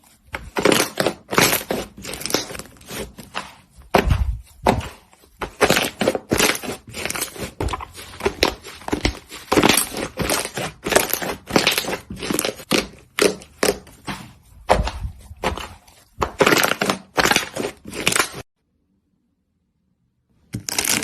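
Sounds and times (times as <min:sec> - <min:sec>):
slime crackling and popping: 0:20.6 - 0:21.0.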